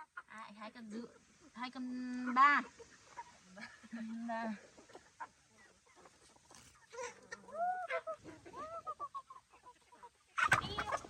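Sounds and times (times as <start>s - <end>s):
chicken squawking: 4.9s - 11.0s.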